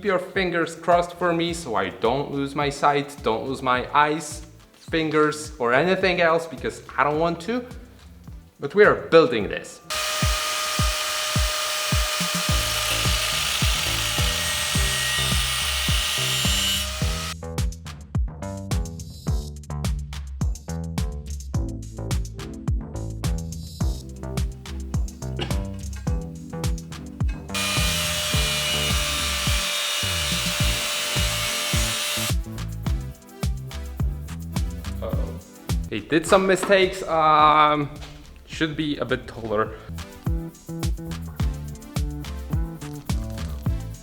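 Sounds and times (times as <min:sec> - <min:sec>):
power tool cutting steel: 0:09.9 - 0:17.4, 0:27.5 - 0:32.4
music with kick-drum beat: 0:09.9 - 0:35.9, 0:39.9 - 0:44.0.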